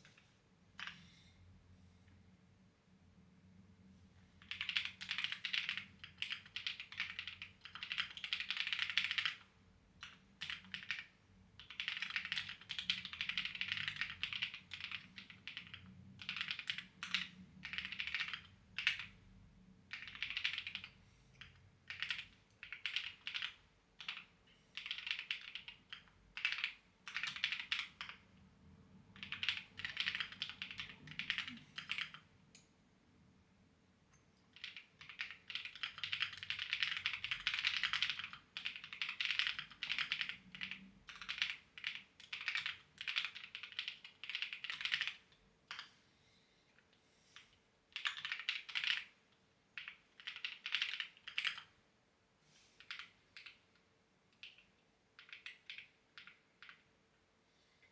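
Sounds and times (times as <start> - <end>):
clacky keyboard typing: 4.4 - 19.2, 19.9 - 28.3, 29.1 - 32.3, 34.5 - 45.9, 47.9 - 49.2, 49.8 - 51.7, 52.8 - 56.9.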